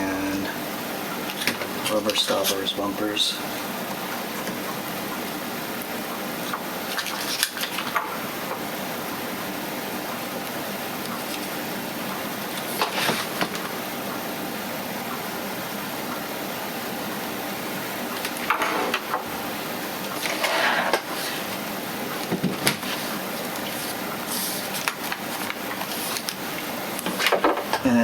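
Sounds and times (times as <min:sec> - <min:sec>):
steady background hiss: 0:00.0 - 0:06.9.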